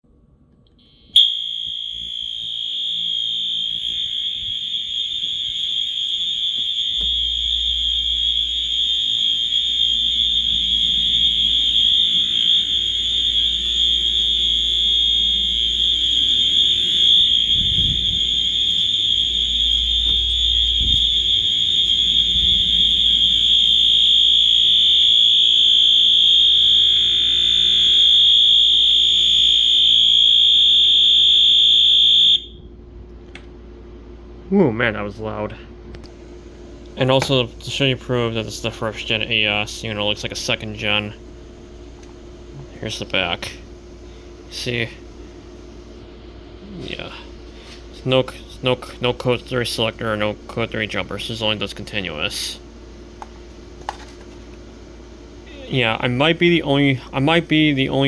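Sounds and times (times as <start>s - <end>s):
fire alarm horn continuous tone: 0.7s - 33.0s, 35.9s - 58.0s.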